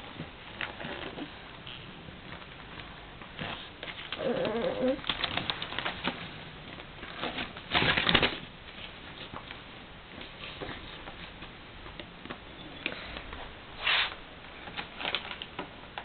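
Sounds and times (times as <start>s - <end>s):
magazine pages rustling: 12.9s - 16.0s.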